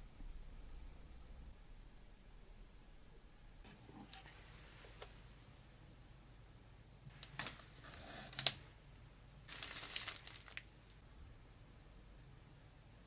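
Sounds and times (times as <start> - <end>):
plastic packaging crinkling: 7.2 - 8.6, 9.5 - 11.0.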